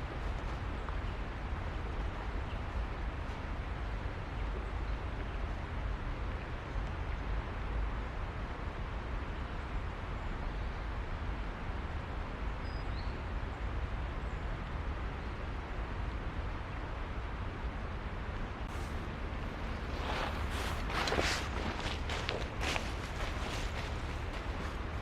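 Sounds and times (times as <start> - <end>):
outdoor low rumble: 18.2 - 25.0.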